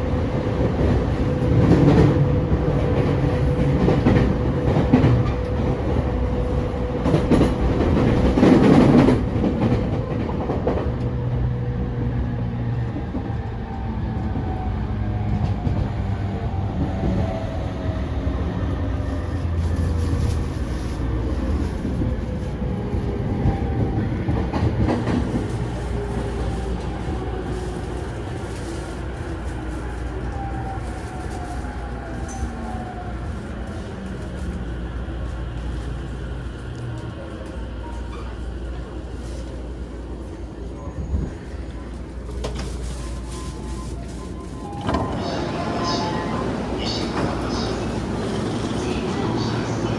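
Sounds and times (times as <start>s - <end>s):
train rumble: 0.0s - 49.9s.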